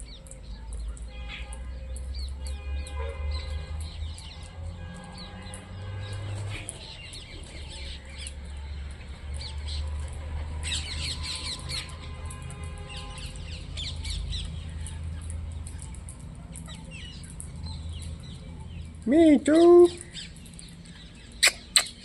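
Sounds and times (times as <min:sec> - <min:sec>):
parrots squawking and chattering: 0:21.3 - 0:22.0.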